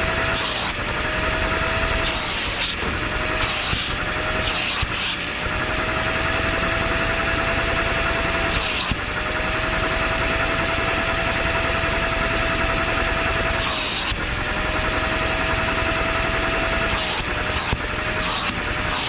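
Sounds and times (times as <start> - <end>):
motor humming: 0.0 - 19.0.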